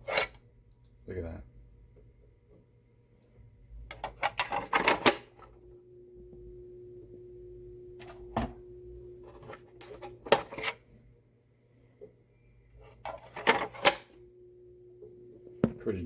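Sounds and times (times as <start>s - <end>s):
plastic cover clicking and clattering: 3.9s - 5.3s, 13.0s - 14.2s.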